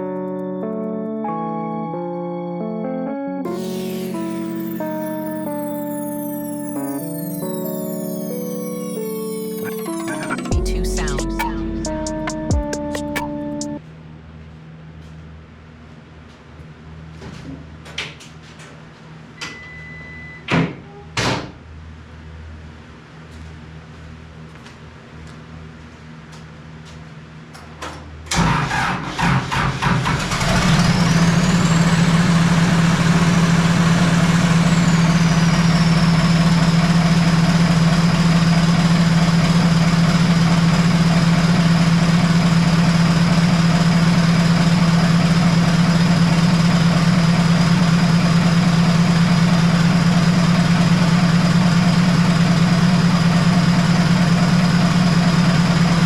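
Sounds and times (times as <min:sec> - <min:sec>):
diesel engine starting and idling: 0:03.5 - 0:05.9, 0:09.6 - 0:13.8, 0:28.3 - 0:56.0
high whine: 0:03.5 - 0:13.8, 0:30.4 - 0:56.0.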